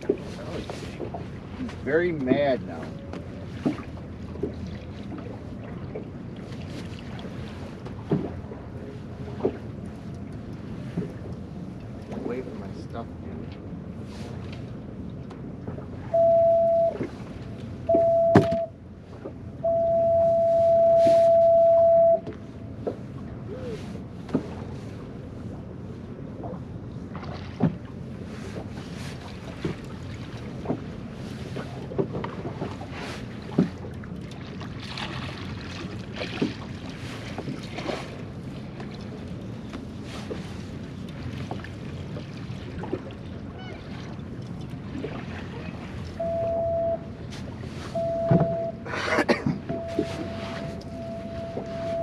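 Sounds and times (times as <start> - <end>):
boat engine hum: 0.0 - 52.0
waves swishing against hull: 0.0 - 52.0
electronic beeps: 17.9 - 18.7.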